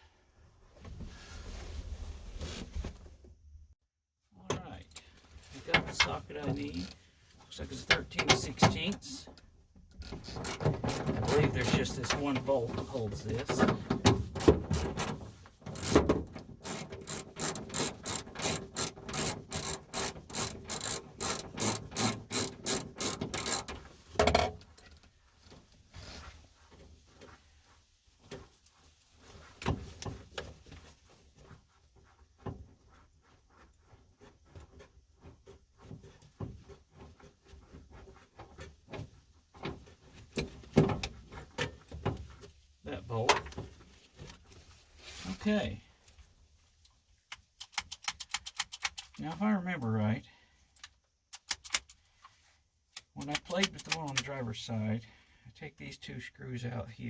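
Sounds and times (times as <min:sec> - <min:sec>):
socket ratchet clicking: 0:15.7 - 0:16.0, 0:16.6 - 0:23.7, 0:47.3 - 0:49.2, 0:50.8 - 0:52.0.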